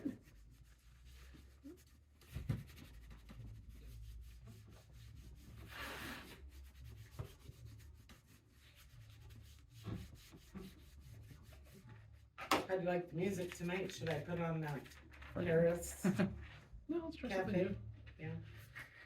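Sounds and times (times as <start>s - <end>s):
rubbing and handling noises: 0.0s - 16.8s.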